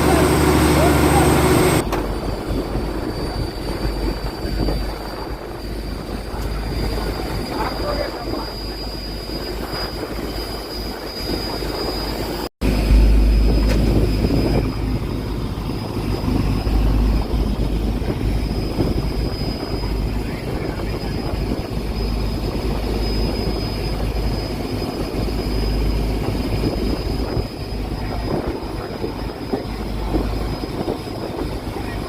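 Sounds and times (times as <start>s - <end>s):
boat engine running: 0.0s - 12.0s, 12.6s - 32.0s
wind rumble on microphone: 0.0s - 32.0s.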